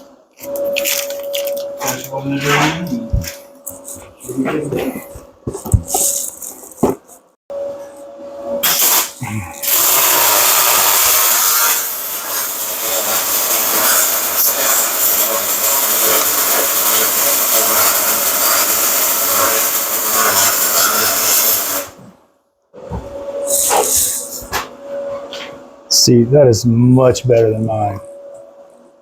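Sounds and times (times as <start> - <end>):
arc welding crackling hiss: 8.6 - 22.0.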